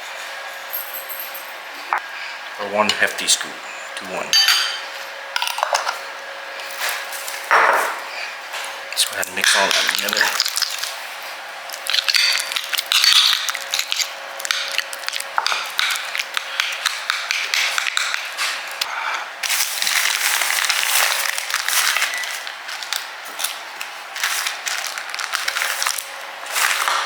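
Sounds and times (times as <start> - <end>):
utensil stirring thick stuffing: 8.9 - 22.5.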